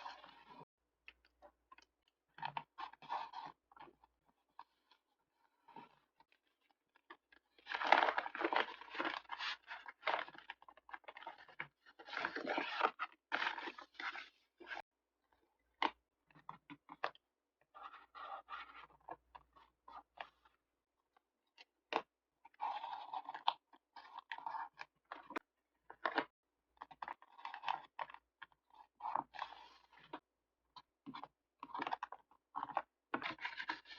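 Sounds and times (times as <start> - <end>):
paper rustling and scraping: 7.6 - 14.8, 33.2 - 33.9.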